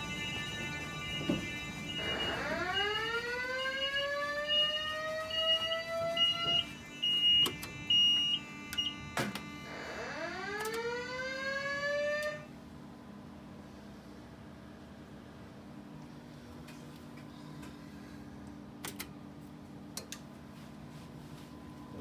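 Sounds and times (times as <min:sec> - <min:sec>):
high steady beep: 0:00.0 - 0:09.7
rising whoop alarm tone: 0:00.0 - 0:12.5.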